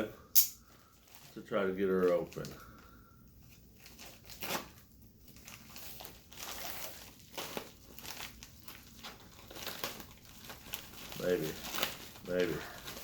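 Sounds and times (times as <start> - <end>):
bag crinkling and rustling: 0.6 - 13.0.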